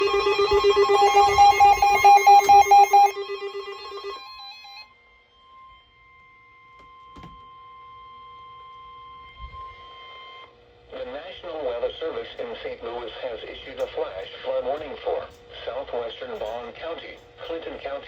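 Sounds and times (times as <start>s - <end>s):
rapidly pulsing electronic alarm: 0.0s - 10.6s
steady alarm tone: 0.0s - 10.6s.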